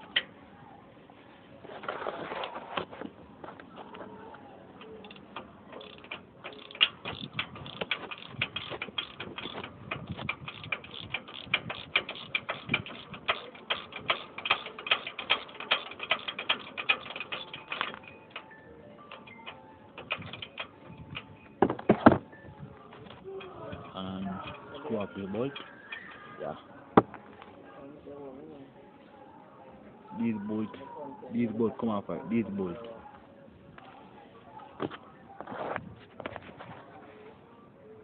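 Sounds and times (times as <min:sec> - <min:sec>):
ratchet tool clicking: 0:04.8 - 0:21.3.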